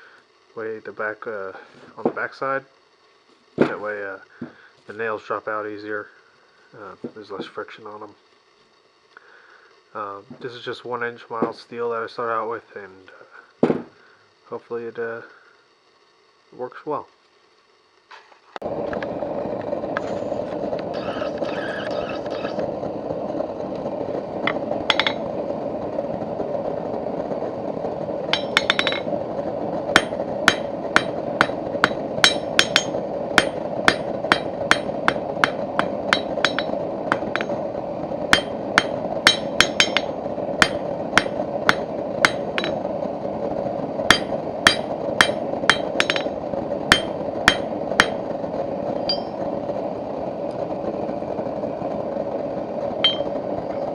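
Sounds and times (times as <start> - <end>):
forge roaring: 18.6 - 53.9
hammer blows on anvil: 24.9 - 25.2, 28.3 - 29.1, 29.9 - 37.6, 38.3 - 42.8, 44.1 - 48.2, 49.0 - 49.4, 53.0 - 53.4.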